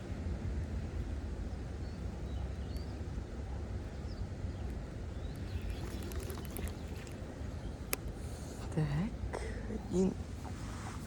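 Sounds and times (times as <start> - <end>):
faint bird chirps: 3.9 - 7.9
faint clicks: 4.7 - 8.2.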